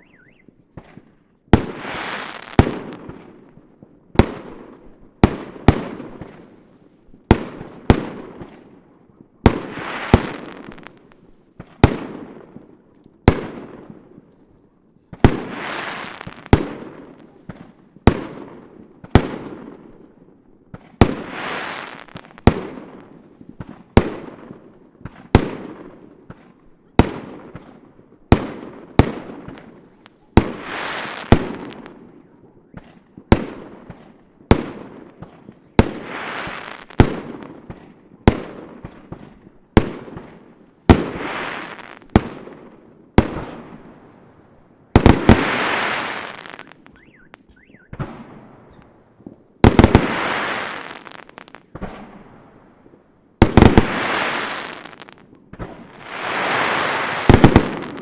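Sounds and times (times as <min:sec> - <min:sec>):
hissing crackling firework tails: 0:01.6 - 0:03.0, 0:09.5 - 0:11.4, 0:15.2 - 0:17.8, 0:21.0 - 0:23.7, 0:29.4 - 0:31.9, 0:35.1 - 0:37.5, 0:40.5 - 0:42.3, 0:43.6 - 0:47.3, 0:48.0 - 0:55.2, 0:55.8 - 0:58.0
fireworks banging: 0:09.5 - 0:11.2, 0:15.2 - 0:18.2, 0:29.0 - 0:31.9, 0:34.5 - 0:37.6, 0:39.8 - 0:42.4, 0:45.0 - 0:48.9, 0:49.6 - 0:52.0, 0:53.4 - 0:58.0.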